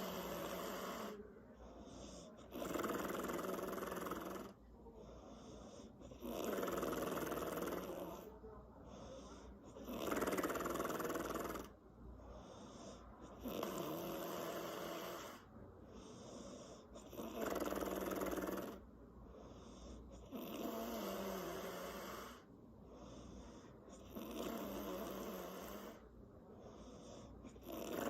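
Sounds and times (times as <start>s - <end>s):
woman snoring: 0.0s - 1.2s, 2.4s - 4.6s, 6.2s - 8.2s, 9.8s - 11.8s, 13.4s - 15.5s, 17.0s - 18.8s, 20.2s - 22.5s, 23.9s - 26.0s, 27.5s - 28.0s
quiet breathing: 0.0s - 28.0s.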